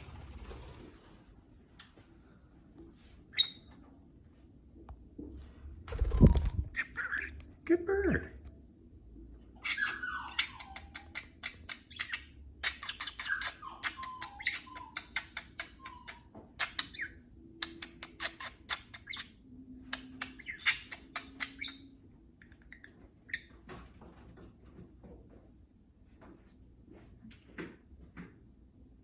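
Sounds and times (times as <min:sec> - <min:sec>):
budgerigars chirping and whistling: 0:05.4 - 0:07.4, 0:09.5 - 0:23.5.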